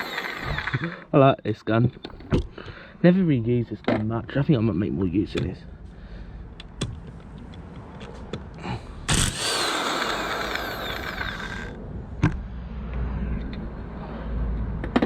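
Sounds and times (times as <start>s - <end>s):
impact wrench rattling: 9.1s - 11.8s.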